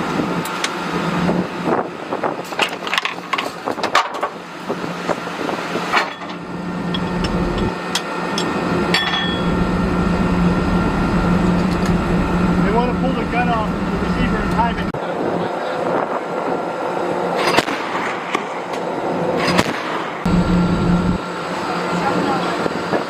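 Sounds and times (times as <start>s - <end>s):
low machinery hum: 0.0s - 23.0s
heavy low rumble: 4.6s - 23.0s.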